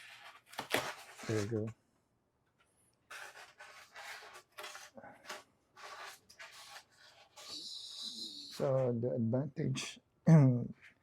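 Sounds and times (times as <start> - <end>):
styrofoam and cardboard scraping: 0.0 - 1.7, 3.1 - 8.7.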